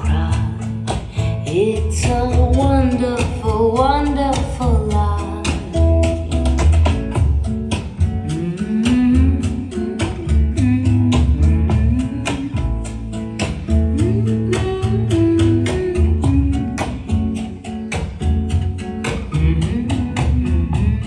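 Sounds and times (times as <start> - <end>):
guitar: 0.0 - 21.0
pulsing bass: 0.0 - 21.0.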